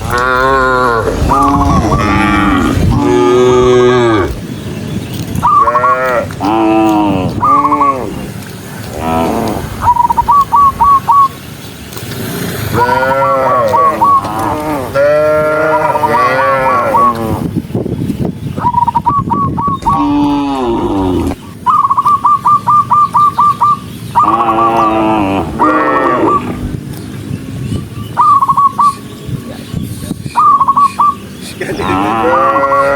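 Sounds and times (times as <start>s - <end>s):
cow mooing: 0.0s - 4.4s, 5.6s - 8.1s, 12.7s - 17.4s, 24.2s - 26.6s, 31.8s - 32.9s
bird chirping: 0.0s - 14.8s, 15.9s - 32.8s
high whistle-like notes: 9.8s - 11.4s.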